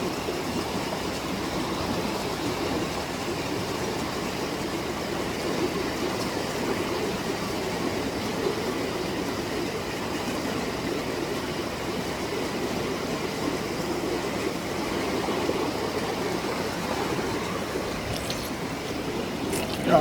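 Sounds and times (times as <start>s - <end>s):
creek water rushing: 0.4s - 20.0s.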